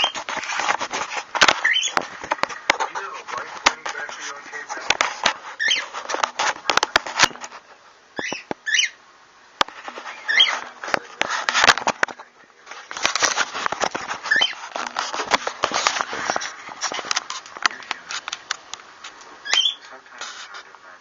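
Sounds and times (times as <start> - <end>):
scratchy clicks and rustling: 0.0 - 8.6, 9.6 - 21.0
chicks high chirps: 8.2 - 9.0.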